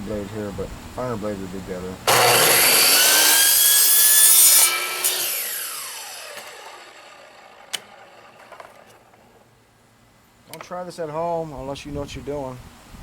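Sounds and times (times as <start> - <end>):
power saw cutting gutter: 2.1 - 9.4
sharp click: 7.7 - 9.0.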